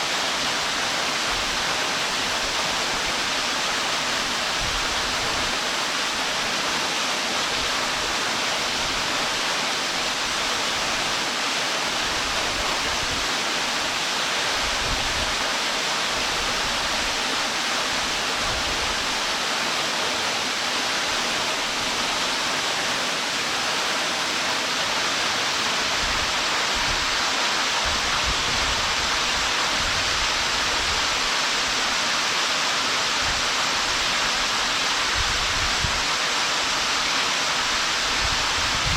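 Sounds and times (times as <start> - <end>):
wind rumbling on microphone: 14.6 - 15.4, 27.8 - 31.1, 35.0 - 36.1, 38.0 - 38.9.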